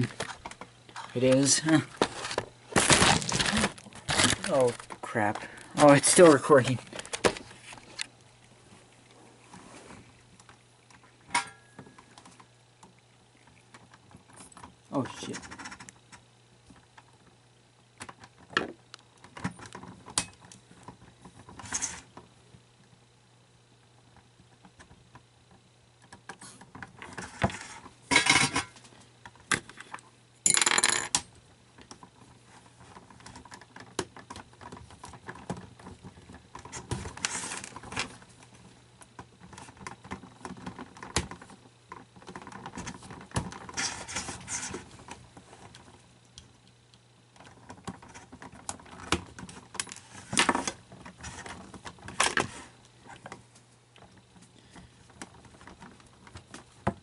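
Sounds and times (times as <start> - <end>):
plastic parts rattling: 0.0 - 8.0.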